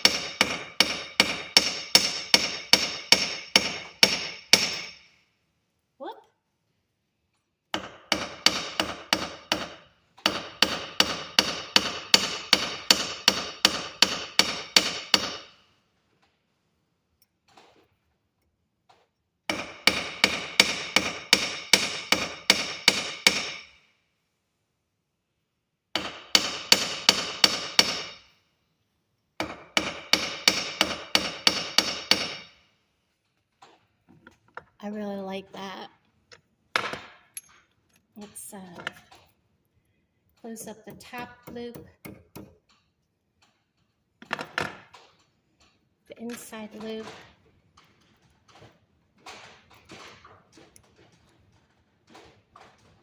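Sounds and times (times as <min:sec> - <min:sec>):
hammer striking metal: 0:00.0 - 0:05.1, 0:26.0 - 0:28.3, 0:29.4 - 0:32.6.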